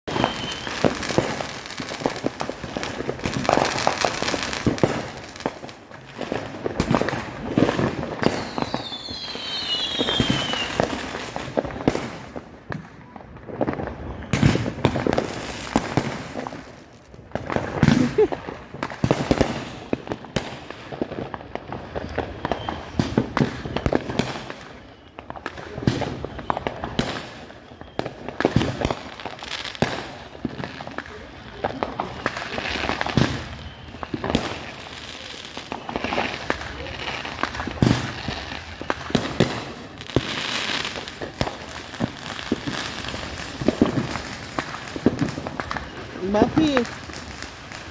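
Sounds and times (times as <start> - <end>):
falling firework whistle: 0.1 - 12.1, 21.6 - 47.9
firecrackers banging and crackling: 0.1 - 47.9.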